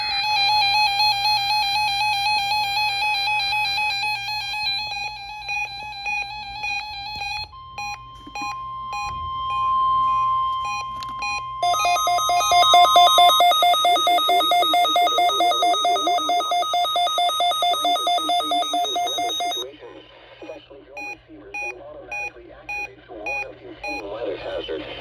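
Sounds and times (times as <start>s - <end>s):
electronic beeping melody: 0.0s - 19.7s
steady held tone: 0.0s - 19.7s
fast two-tone electronic pattern: 11.6s - 19.7s.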